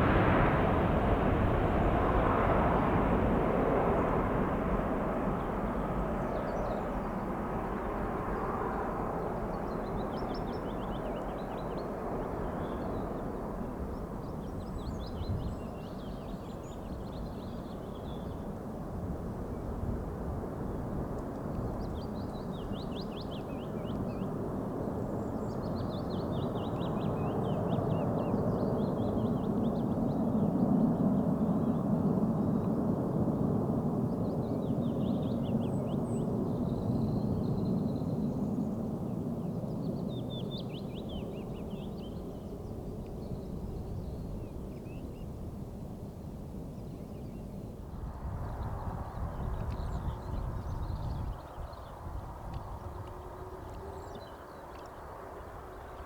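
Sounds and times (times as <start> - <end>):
jet engines rumbling: 0.0 - 14.4, 48.0 - 56.0.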